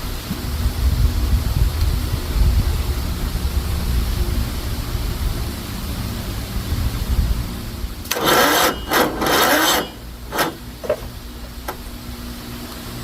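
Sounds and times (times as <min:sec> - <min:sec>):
starter motor cranking: 0:08.0 - 0:11.0.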